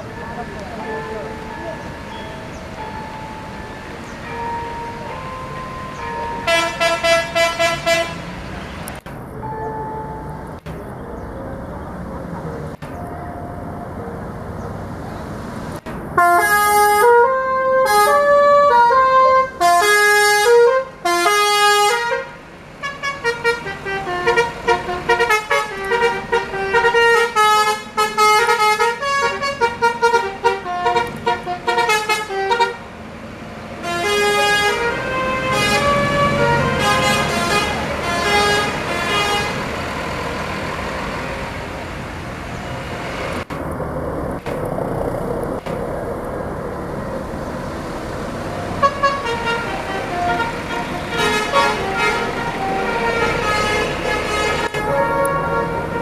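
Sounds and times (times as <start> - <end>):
multi-tone bus horn tune: 4.4 - 8.4, 16.1 - 32.9, 33.8 - 40.3, 48.7 - 56.0
steady background noise: 37.1 - 55.3.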